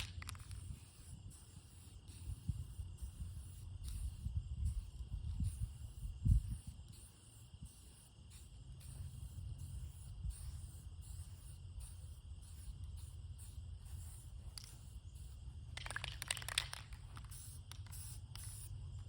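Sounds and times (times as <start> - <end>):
wind rumble on microphone: 0.0 - 8.0
insects chirping: 0.0 - 19.0.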